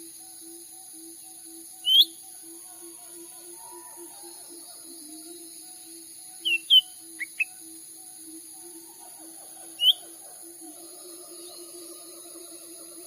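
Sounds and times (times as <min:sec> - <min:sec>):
bird chirping: 0:01.8 - 0:02.3, 0:05.7 - 0:07.8, 0:08.6 - 0:13.0
high-pitched drone: 0:10.0 - 0:13.0.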